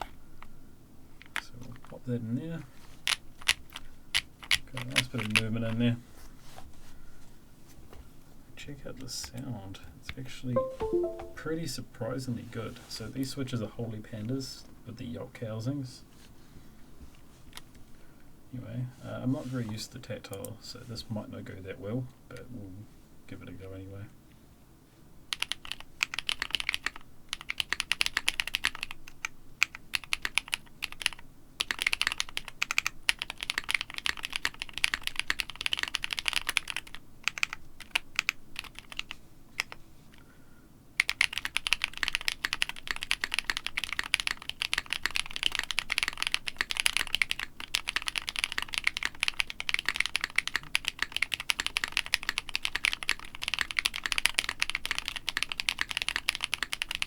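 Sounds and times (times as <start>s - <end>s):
mechanical keyboard typing: 10.6s - 11.3s, 25.3s - 39.8s, 41.0s - 57.0s.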